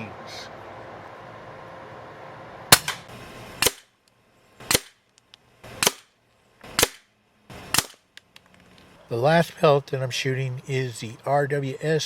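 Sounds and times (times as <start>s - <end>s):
air rifle cracks: 2.7s - 3.9s, 4.6s - 7.1s, 7.7s - 8.9s.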